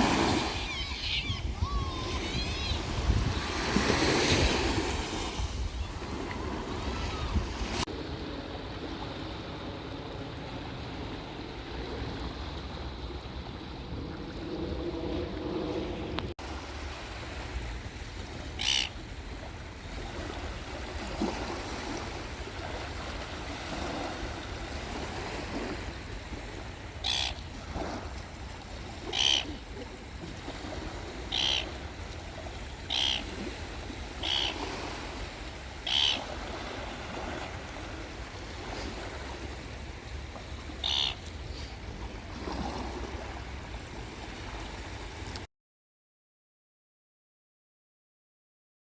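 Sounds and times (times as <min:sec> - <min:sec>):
surf: 0:00.0 - 0:45.5
wind: 0:00.0 - 0:45.5
bird giving sharp calls: 0:18.6 - 0:18.9, 0:27.0 - 0:27.4, 0:29.1 - 0:29.6, 0:31.2 - 0:31.7, 0:32.9 - 0:33.3, 0:34.2 - 0:34.6, 0:35.8 - 0:36.3, 0:40.8 - 0:41.2.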